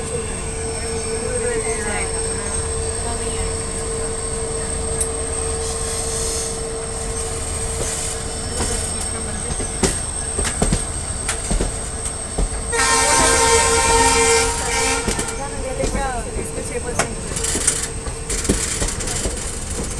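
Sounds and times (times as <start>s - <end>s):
train rumbling on track: 0.0s - 19.9s
wheels clacking over rail joints: 4.9s - 19.9s
train horn: 12.7s - 17.5s.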